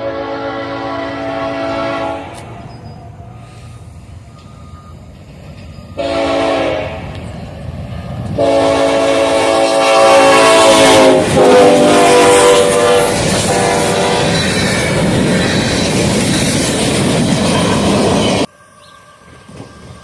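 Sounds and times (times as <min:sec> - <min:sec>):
locomotive air horn blasts: 0:00.0 - 0:02.5, 0:06.0 - 0:07.2, 0:08.3 - 0:14.4
low rumble of moving train: 0:00.0 - 0:20.0.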